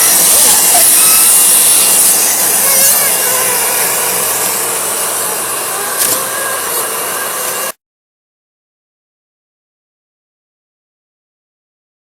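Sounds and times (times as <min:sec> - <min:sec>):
bag sealer mechanical hiss: 0:00.0 - 0:07.7.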